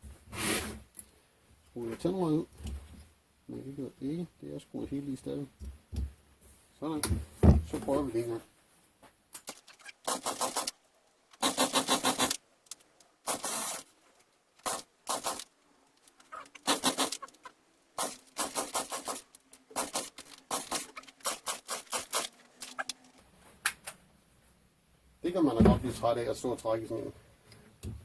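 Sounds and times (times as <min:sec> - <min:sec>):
chainsaw pull-start cord whirr: 0:13.3 - 0:13.9.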